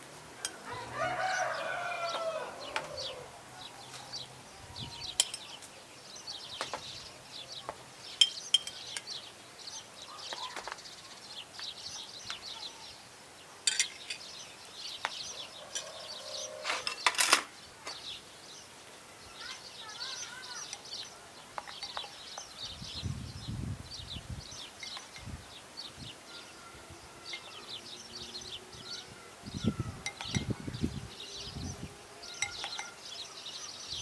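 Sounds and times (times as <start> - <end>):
small birds chirping: 0.0 - 34.0
rooster crowing: 0.4 - 3.4, 15.4 - 16.9.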